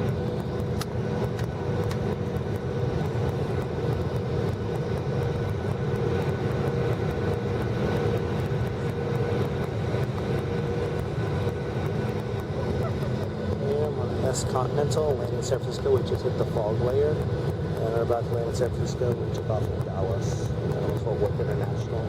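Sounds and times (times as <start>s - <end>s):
constant hum: 0.0s - 22.0s
jet engines: 0.0s - 22.0s.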